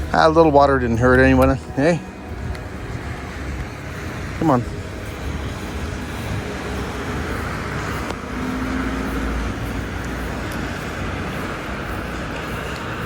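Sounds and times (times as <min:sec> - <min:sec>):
tyres hissing on wet street: 0:00.0 - 0:13.0
vehicle passing: 0:00.0 - 0:13.0.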